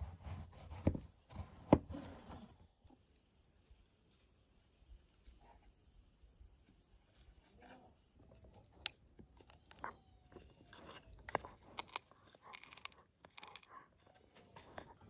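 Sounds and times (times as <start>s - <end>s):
vegetables crunching and snapping: 8.5s - 15.0s.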